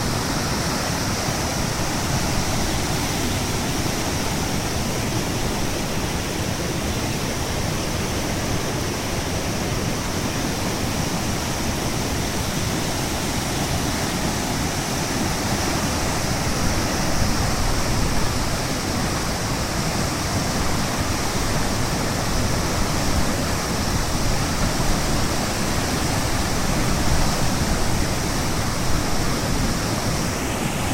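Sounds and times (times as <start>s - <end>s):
flood water rushing: 0.0s - 30.9s.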